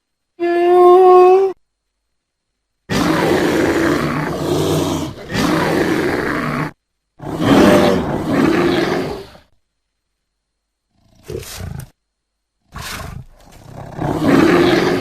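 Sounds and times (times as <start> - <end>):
bear roaring: 2.9 - 9.5, 10.9 - 12.0, 12.7 - 15.0.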